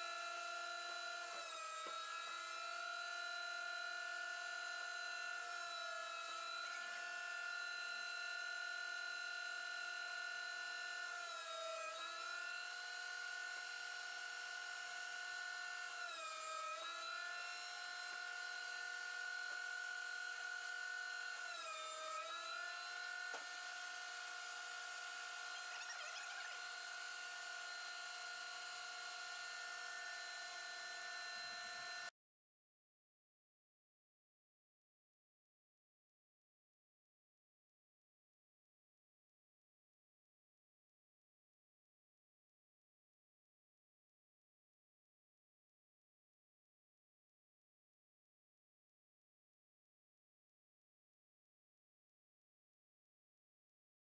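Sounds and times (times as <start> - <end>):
planer motor whining: 0.0 - 32.1.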